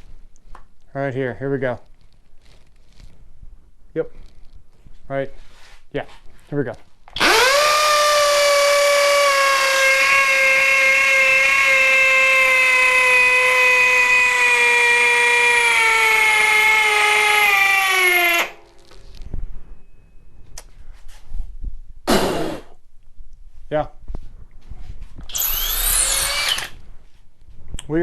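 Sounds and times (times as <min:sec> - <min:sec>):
hammer drill boring into concrete: 0:07.2 - 0:18.6, 0:25.3 - 0:26.8.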